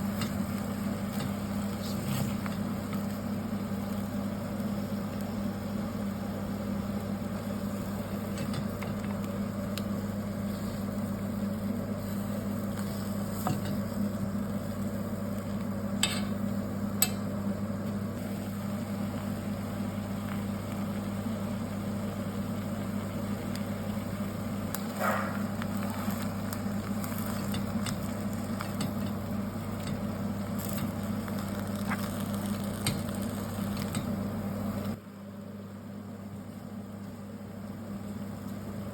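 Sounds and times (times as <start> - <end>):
steady low hum: 0.0 - 38.9
utensil stirring food: 25.5 - 34.2.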